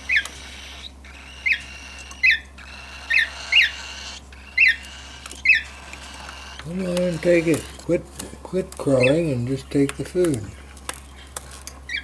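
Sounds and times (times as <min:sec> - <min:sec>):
cockatiel chick begging calls: 0:00.1 - 0:07.8, 0:08.9 - 0:09.6.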